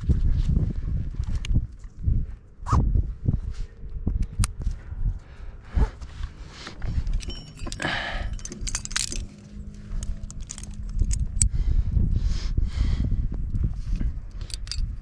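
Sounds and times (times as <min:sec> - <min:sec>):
metal climbing gear clinking: 0:03.7 - 0:11.6, 0:13.8 - 0:15.0.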